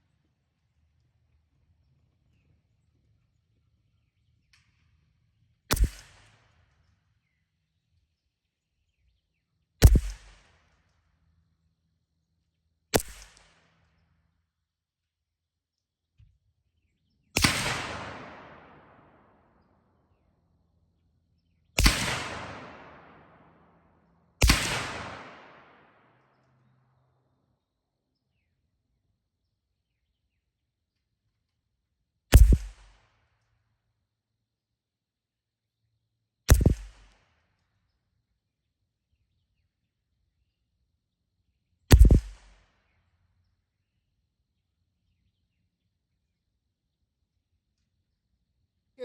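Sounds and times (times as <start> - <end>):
rifle shots with echo: 5.7 - 6.7, 9.8 - 10.6, 13.0 - 13.7, 17.4 - 19.6, 21.8 - 26.4, 32.3 - 33.0, 36.5 - 37.2, 41.9 - 42.7.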